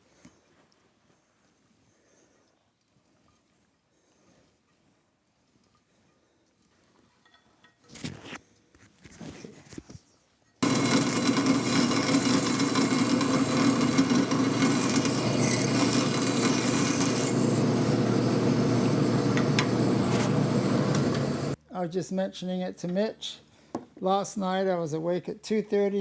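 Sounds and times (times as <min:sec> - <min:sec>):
faint handling sounds: 0:00.1 - 0:10.6
power tool working metal: 0:10.6 - 0:21.6.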